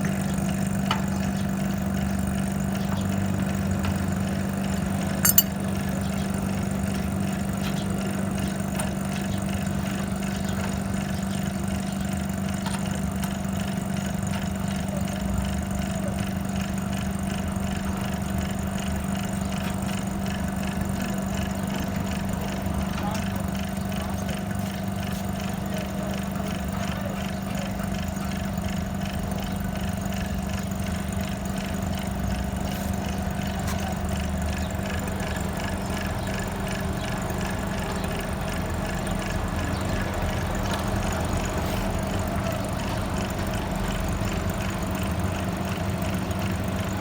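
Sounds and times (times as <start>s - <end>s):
faint even ticking: 5.3s - 5.5s.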